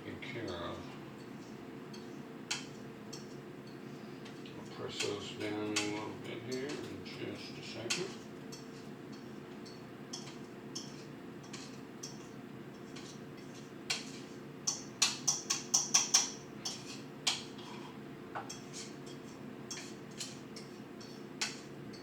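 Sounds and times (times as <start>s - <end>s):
steady low hum: 0.0s - 22.0s
kitchenware clicks and taps: 5.0s - 7.0s, 7.8s - 14.1s, 14.7s - 17.8s, 18.4s - 22.0s.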